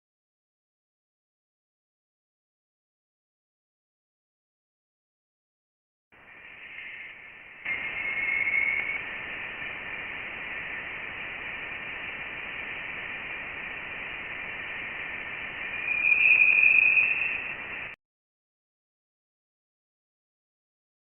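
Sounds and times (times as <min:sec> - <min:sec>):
steady hiss: 0:06.2 - 0:18.0
thin whistling tones: 0:06.2 - 0:18.0.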